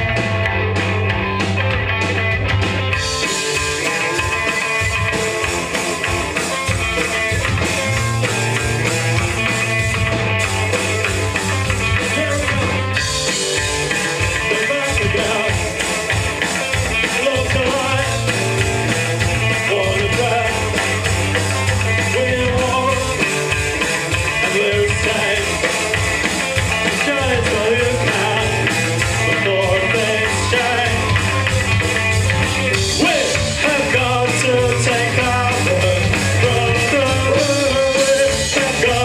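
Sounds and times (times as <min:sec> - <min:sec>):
rock band playing live: 0:00.0 - 0:39.0.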